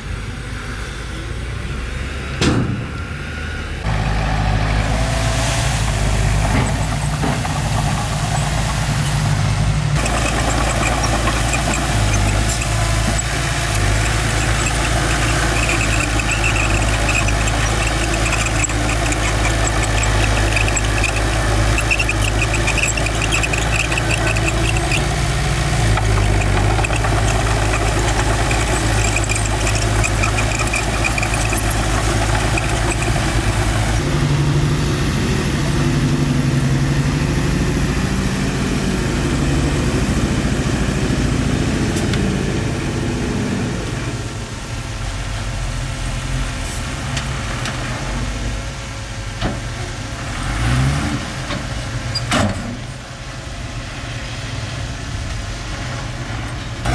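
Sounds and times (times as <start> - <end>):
bulldozer diesel engine running: 0.0 - 56.9
pulsing high squeak: 10.0 - 33.9.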